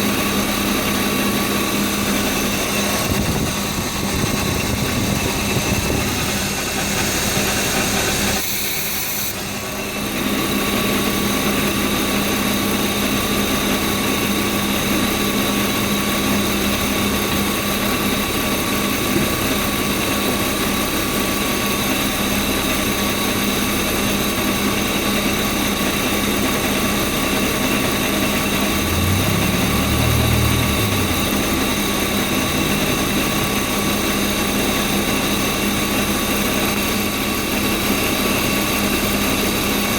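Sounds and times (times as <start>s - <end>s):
car engine idling: 0.1s - 8.4s, 24.3s - 38.0s.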